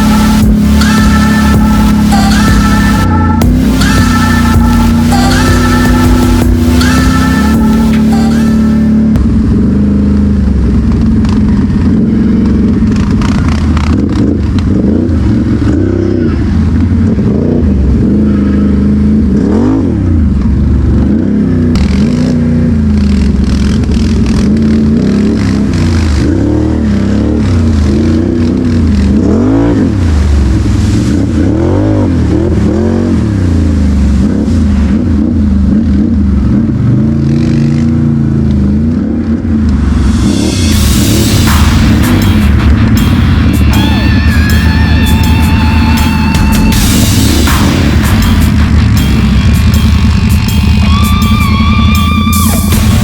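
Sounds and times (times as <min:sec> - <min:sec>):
atv engine revving: 0:00.0 - 0:53.0.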